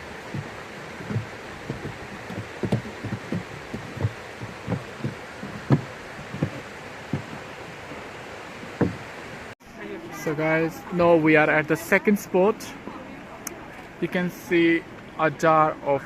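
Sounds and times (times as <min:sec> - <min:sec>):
footsteps walking: 0:00.0 - 0:09.1.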